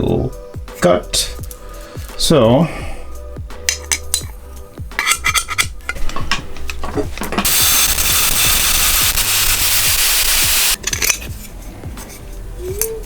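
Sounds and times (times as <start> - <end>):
metal parts clicking: 5.0 - 7.5, 10.8 - 11.3
hissing metal cutting: 7.4 - 10.8.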